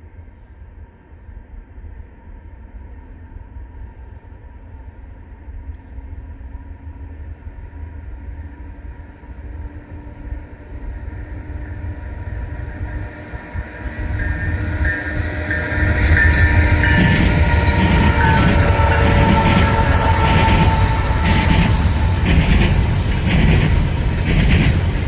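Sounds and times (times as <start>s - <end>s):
freight train rumble: 9.3s - 25.0s.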